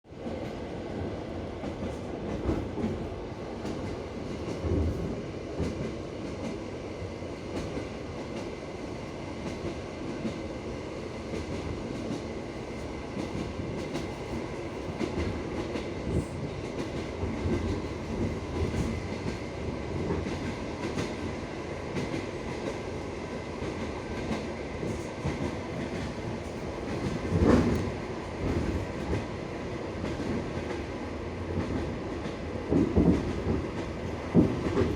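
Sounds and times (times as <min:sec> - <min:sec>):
train wheels rumbling: 0:07.4 - 0:34.9.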